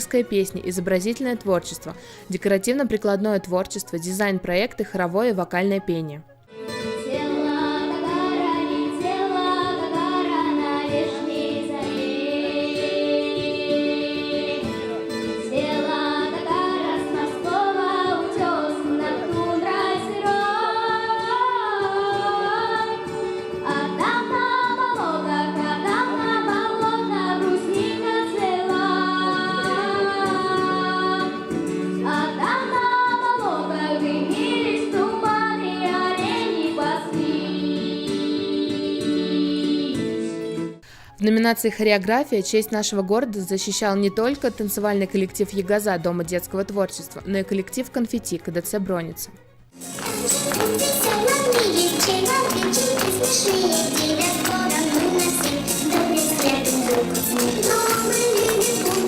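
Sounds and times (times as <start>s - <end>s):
woman singing: 6.9s - 40.3s, 50.0s - 59.0s
instrumental accompaniment: 44.2s - 59.0s.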